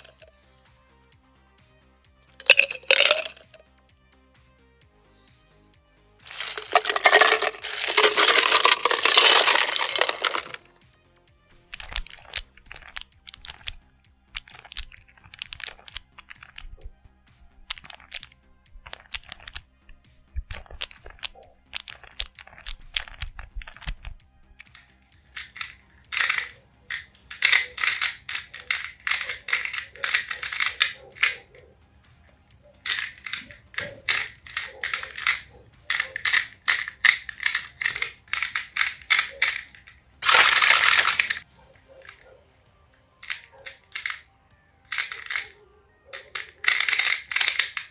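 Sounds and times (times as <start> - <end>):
plastic puzzle cube clicking: 0.0 - 0.3, 2.4 - 3.5, 6.3 - 10.6, 11.6 - 31.5, 32.8 - 41.4, 43.2 - 44.3, 44.9 - 47.9.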